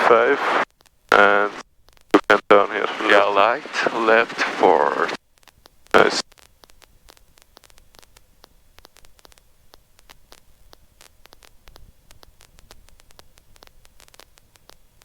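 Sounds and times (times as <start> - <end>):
crackling clicks: 0.0 - 14.8
faint static hiss: 0.0 - 15.0.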